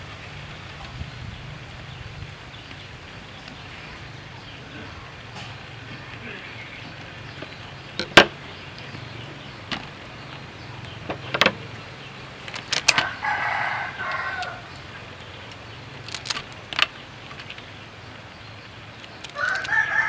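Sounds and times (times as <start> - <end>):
chicken calling: 12.9 - 15.1, 19.4 - 20.0.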